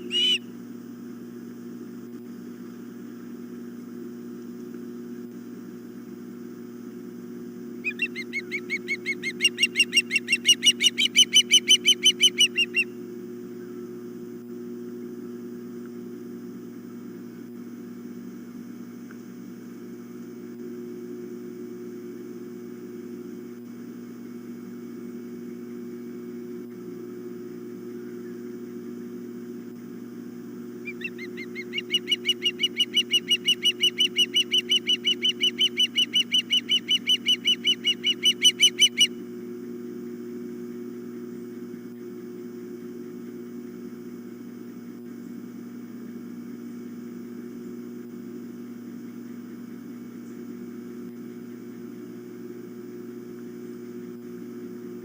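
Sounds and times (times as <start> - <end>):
osprey whistled chirps: 0.0 - 0.5, 7.8 - 12.9, 30.9 - 39.2
steady low hum: 0.0 - 55.0.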